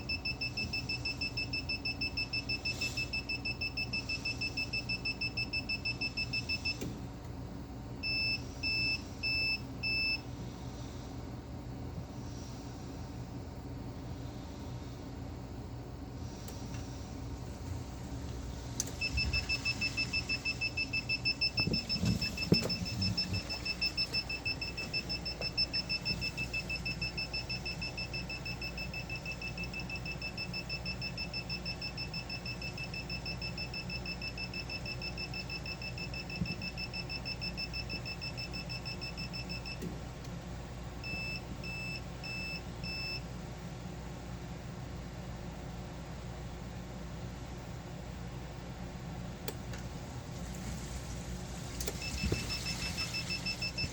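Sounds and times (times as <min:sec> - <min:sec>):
pump alarm beeping: 0:00.0 - 0:06.8, 0:08.0 - 0:10.3, 0:18.8 - 0:39.8, 0:41.0 - 0:43.2, 0:51.5 - 0:53.9
steady low hum: 0:00.0 - 0:53.9.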